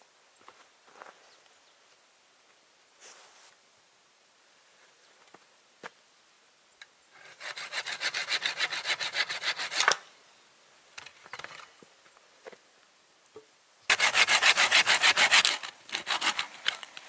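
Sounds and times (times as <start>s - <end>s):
hand saw cutting wood: 7.2s - 10.0s, 13.9s - 17.0s.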